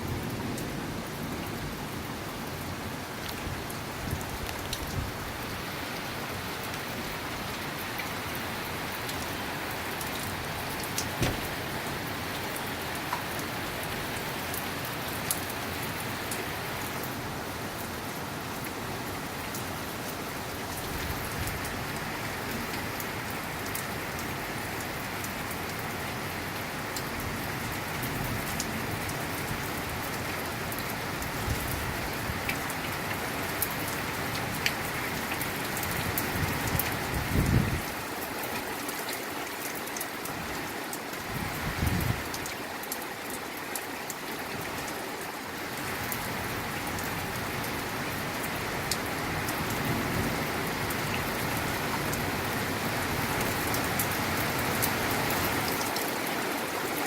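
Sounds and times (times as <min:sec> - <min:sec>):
steady rain falling: 0:00.0 - 0:57.0
raindrops tapping a surface: 0:10.0 - 0:11.9.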